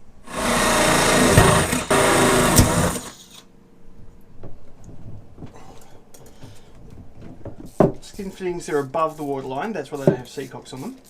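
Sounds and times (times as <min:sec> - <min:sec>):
electric drill boring: 0:00.3 - 0:03.4.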